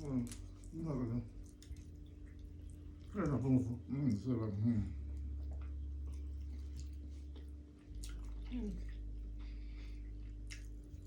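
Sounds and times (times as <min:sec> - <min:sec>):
steady low hum: 0:00.0 - 0:11.0
wet eating sounds: 0:00.0 - 0:11.0.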